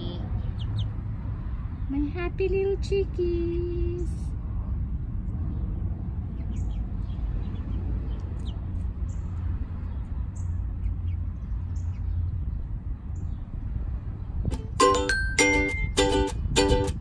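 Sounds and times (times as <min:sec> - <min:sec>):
steady low rumble: 0:00.0 - 0:14.9
chicks peeping: 0:00.1 - 0:01.0, 0:05.6 - 0:13.4.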